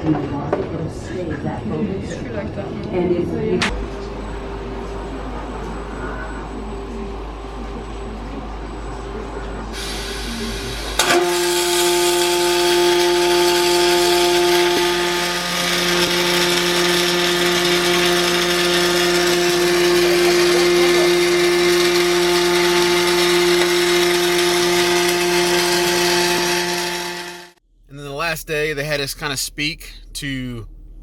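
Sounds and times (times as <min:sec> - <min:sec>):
welding arc buzzing and hissing: 0:09.8 - 0:27.6.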